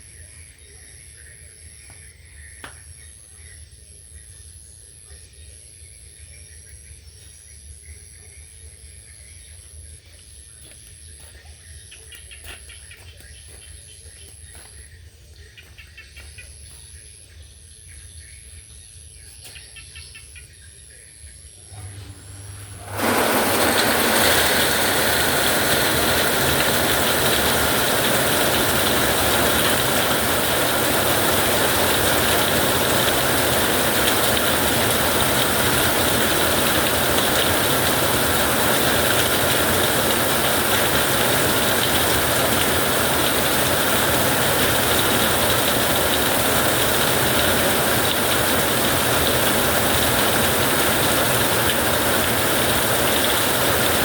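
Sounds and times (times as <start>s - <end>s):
heavy rain falling: 22.2s - 54.0s.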